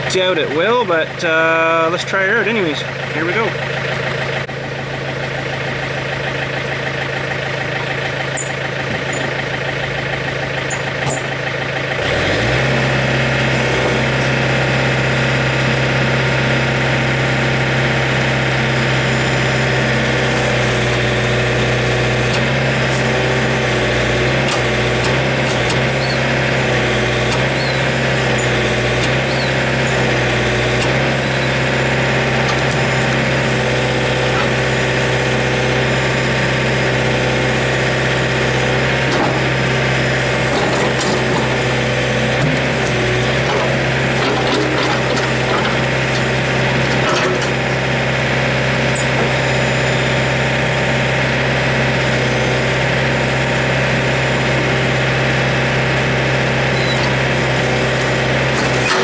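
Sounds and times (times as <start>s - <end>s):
diesel engine revving under load: 0.0s - 59.0s.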